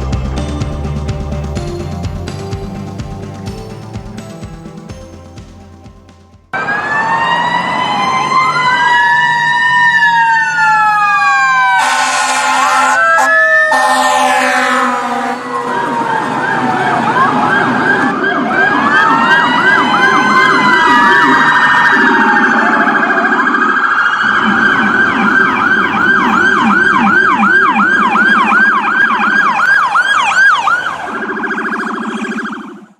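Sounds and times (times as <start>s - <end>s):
electronic emergency vehicle siren: 6.5s - 32.9s.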